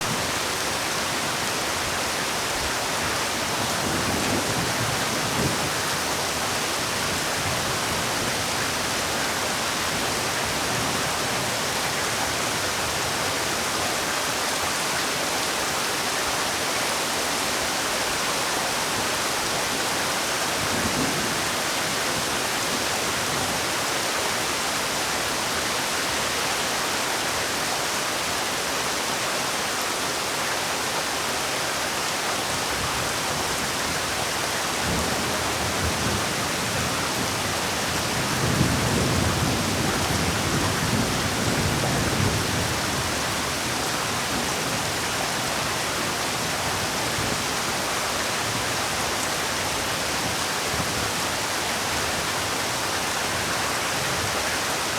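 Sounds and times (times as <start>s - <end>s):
heavy rain hissing: 32.2s - 54.9s.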